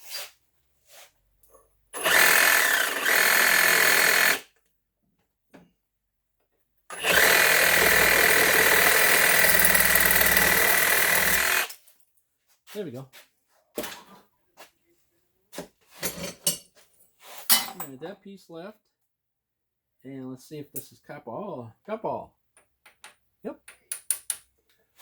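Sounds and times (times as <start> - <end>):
power tool cutting metal whine: 2.0 - 4.4, 6.9 - 11.7.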